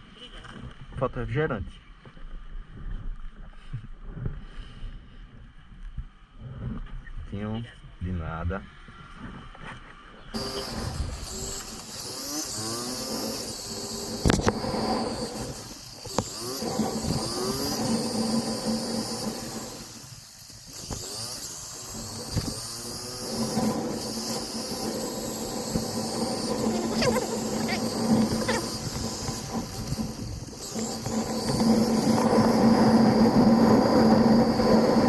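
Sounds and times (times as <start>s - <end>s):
wind and road noise: 0.0s - 35.0s
motorcycle engine: 10.4s - 35.0s.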